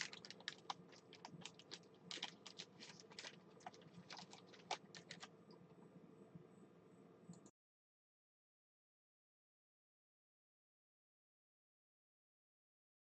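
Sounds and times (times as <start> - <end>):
faint keyboard typing: 0.0 - 5.6.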